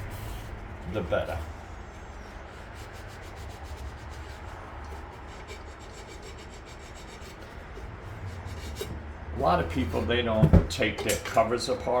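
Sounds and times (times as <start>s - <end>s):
sandpaper rubbing on metal: 2.5s - 9.0s.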